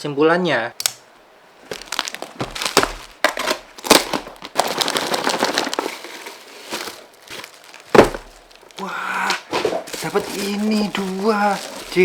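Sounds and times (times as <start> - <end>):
sharp snaps and clicks: 0.8 - 1.1
packaging crinkling and rustling: 1.6 - 8.8, 9.5 - 12.0.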